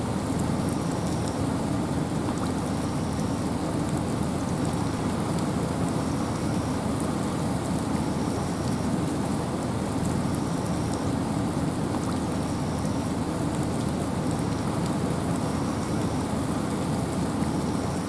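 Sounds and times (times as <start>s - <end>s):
steady rain and wind: 0.0s - 18.0s
raindrop ticks: 0.6s - 1.5s.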